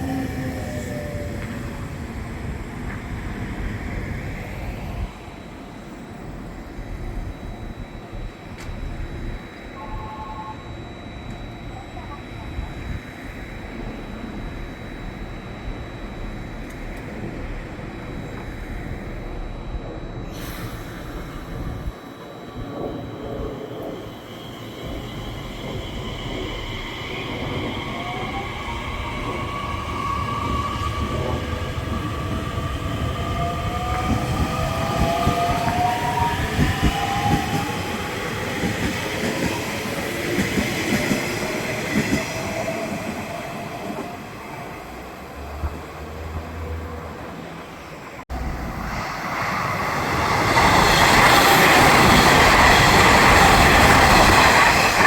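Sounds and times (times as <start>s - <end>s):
rush of passing train: 0.0s - 55.0s
train motor whine: 0.0s - 55.0s
rail joint clicking: 11.2s - 24.1s.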